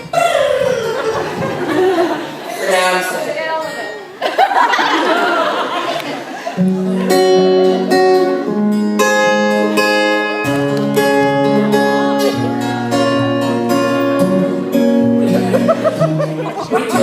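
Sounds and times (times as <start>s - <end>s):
guitar picked melody: 6.6s - 17.0s.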